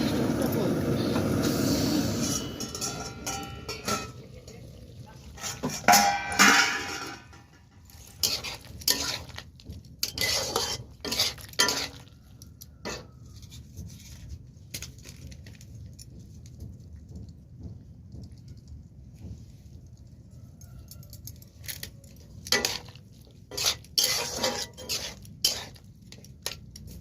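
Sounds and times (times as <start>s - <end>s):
metal utensils clattering on dishes: 2.1s - 13.1s, 21.2s - 27.0s.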